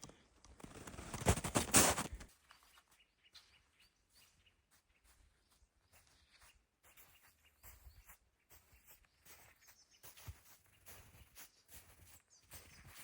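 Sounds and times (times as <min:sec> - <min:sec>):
rustling and crunching: 0:00.6 - 0:02.4.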